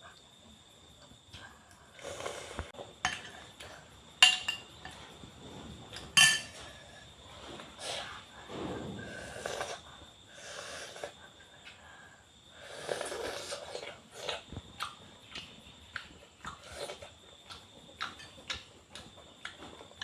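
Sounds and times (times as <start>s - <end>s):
utensils knocking and scraping dishes: 4.2s - 5.0s, 6.0s - 6.7s.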